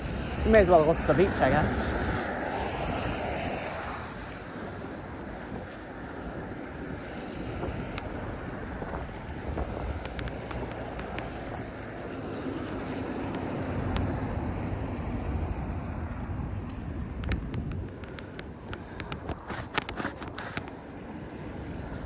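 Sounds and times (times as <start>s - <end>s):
tyre and road noise: 0.0s - 22.0s
wind buffeting microphone: 0.0s - 22.0s
faint ticks: 10.0s - 11.5s.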